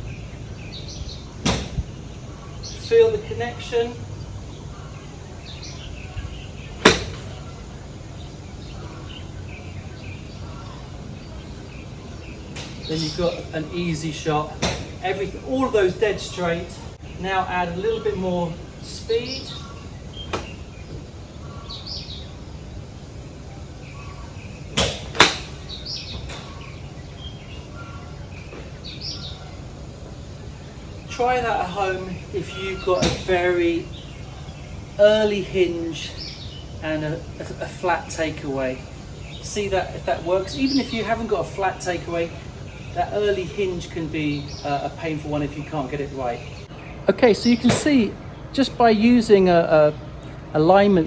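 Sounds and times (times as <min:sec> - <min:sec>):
outdoor background noise: 0:00.0 - 0:51.0
golf club striking ball: 0:01.4 - 0:01.9, 0:06.8 - 0:07.4, 0:14.6 - 0:15.2, 0:24.7 - 0:26.8, 0:33.0 - 0:33.6.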